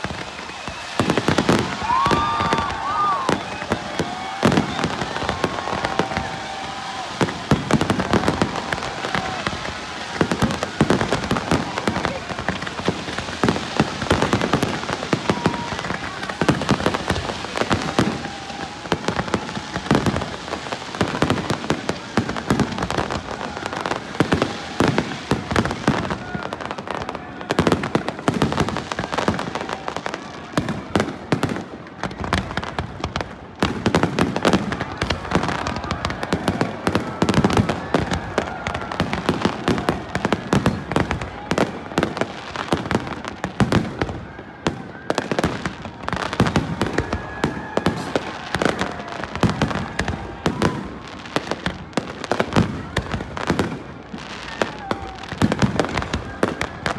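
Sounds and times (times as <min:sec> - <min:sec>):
fireworks banging and crackling: 0:00.0 - 0:56.9.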